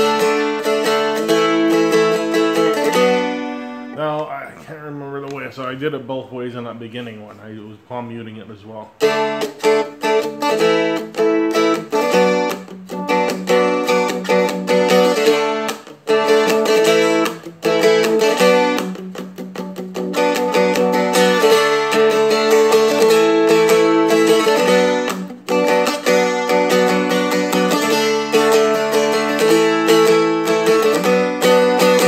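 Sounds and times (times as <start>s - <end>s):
acoustic guitar strumming chords: 0.0s - 5.5s, 8.7s - 32.0s.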